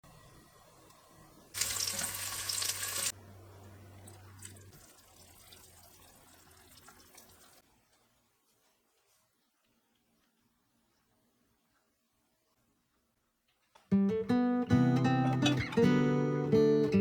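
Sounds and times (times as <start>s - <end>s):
tap water running into sink: 1.6s - 3.1s, 4.1s - 7.6s.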